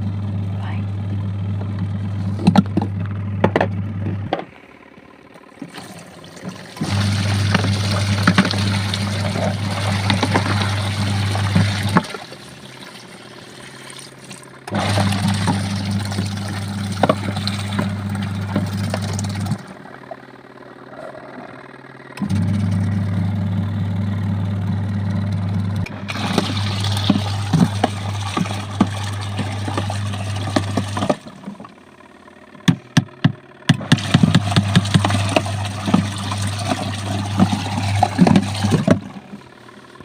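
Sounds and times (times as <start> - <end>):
washing machine motor humming: 0.0 - 40.0
water sloshing in tub: 5.3 - 20.4, 25.9 - 31.8, 33.8 - 40.0.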